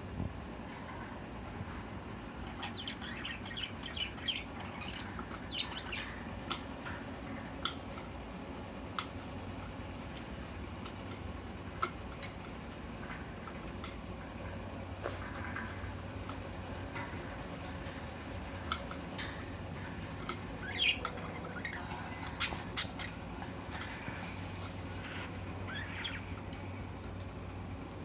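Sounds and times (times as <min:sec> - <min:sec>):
budgerigars chirping and chattering: 0:02.5 - 0:06.6, 0:20.6 - 0:23.2, 0:24.9 - 0:26.4.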